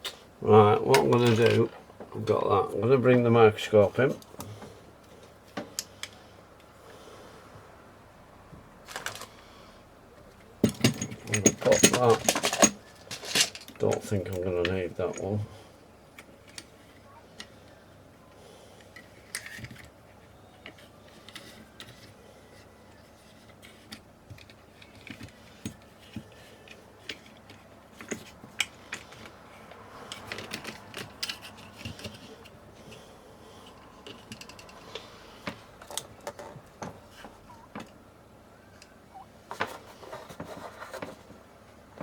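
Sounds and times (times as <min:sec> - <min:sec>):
small tools clattering on workbench: 0:10.6 - 0:15.4.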